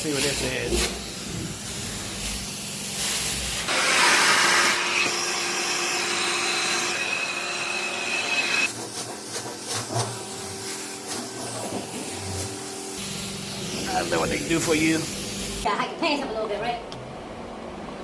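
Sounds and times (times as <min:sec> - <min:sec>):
carpet extractor vacuum whine: 0:03.6 - 0:08.7.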